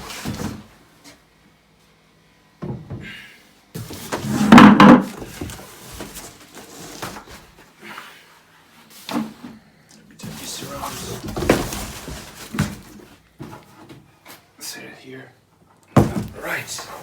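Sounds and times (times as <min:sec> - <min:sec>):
packaging rustling: 0:10.4 - 0:13.1.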